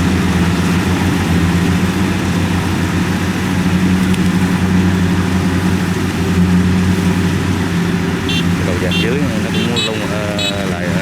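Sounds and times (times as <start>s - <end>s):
diesel engine droning: 0.0s - 11.0s.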